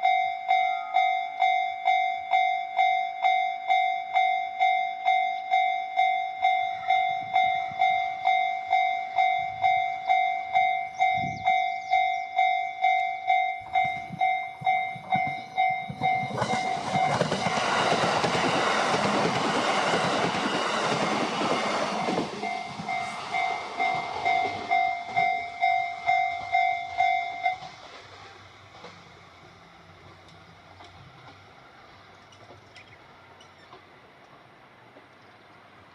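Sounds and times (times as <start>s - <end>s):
level-crossing alarm dinging: 0.0s - 27.7s
train passing: 0.0s - 35.9s.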